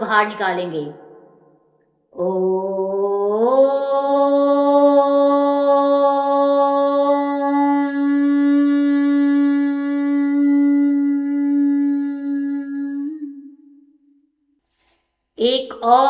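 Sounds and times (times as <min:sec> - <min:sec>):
woman chanting om: 0:02.2 - 0:13.8.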